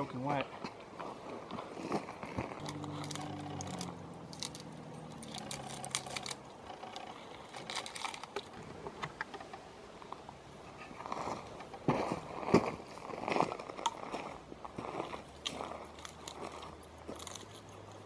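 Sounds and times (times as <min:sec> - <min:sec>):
twigs and kindling crackling: 0:00.0 - 0:18.0
low steady hum: 0:00.1 - 0:18.0.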